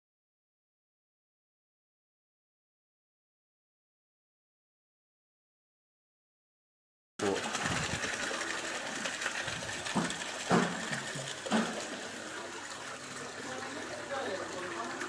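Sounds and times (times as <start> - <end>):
washing machine whirring with water: 7.2 - 15.0
sharp knocks: 9.9 - 11.8.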